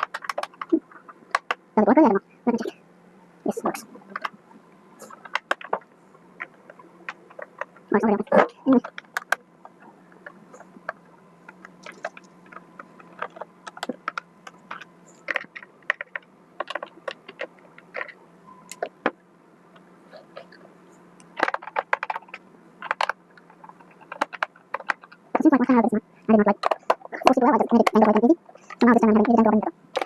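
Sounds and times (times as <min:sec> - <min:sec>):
plastic parts clicking: 0:00.0 - 0:01.6, 0:05.0 - 0:19.2, 0:21.2 - 0:25.5, 0:26.5 - 0:30.0
faint steady hum: 0:00.0 - 0:30.0.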